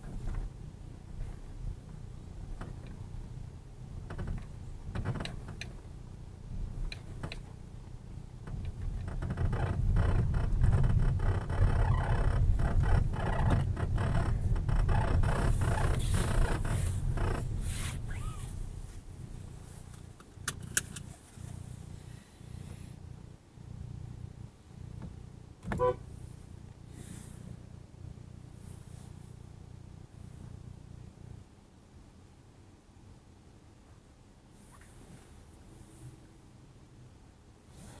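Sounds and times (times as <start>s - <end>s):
rapid clicks and rattles: 8.4s - 18.4s
creaking: 8.4s - 18.7s.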